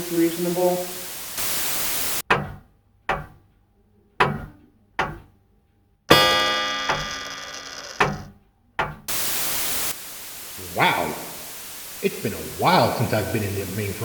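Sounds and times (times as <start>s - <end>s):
static hiss: 0.0s - 2.2s, 9.1s - 14.0s
ringing metallic clang: 6.1s - 8.2s.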